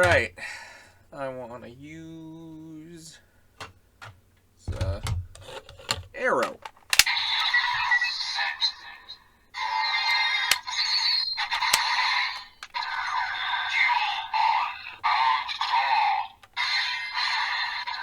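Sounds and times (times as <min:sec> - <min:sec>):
sharp plastic clicks: 0:00.0 - 0:00.3, 0:03.6 - 0:07.9, 0:10.0 - 0:13.8, 0:14.8 - 0:16.9
toy belt electronic sound effects: 0:09.6 - 0:18.0.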